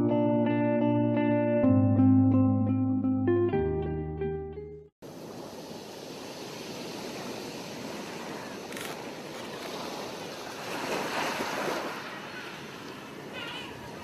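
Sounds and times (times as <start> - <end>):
ocean waves washing: 5.0 - 14.0.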